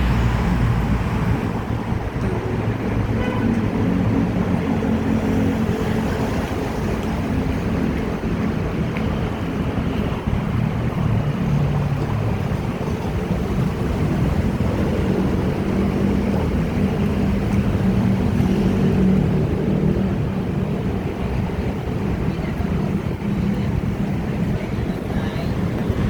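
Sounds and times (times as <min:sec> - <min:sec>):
electric train rumbling: 0:00.0 - 0:26.0.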